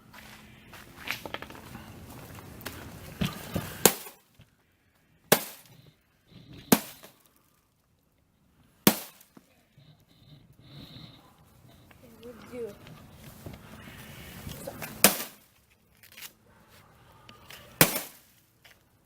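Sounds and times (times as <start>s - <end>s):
sledgehammer smashing glass: 17.8s - 18.2s.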